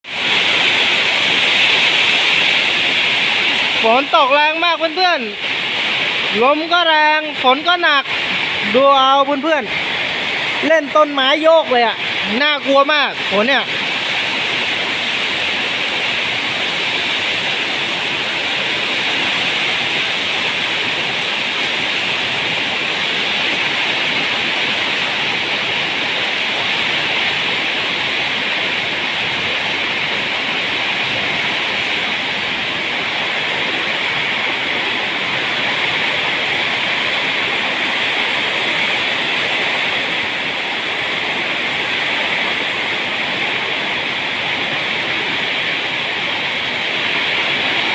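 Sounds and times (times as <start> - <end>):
torrential rain: 0.0 - 47.9.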